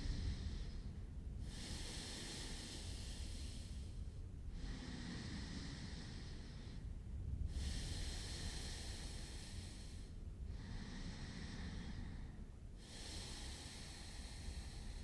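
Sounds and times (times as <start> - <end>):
person breathing deeply: 7.6 - 15.0.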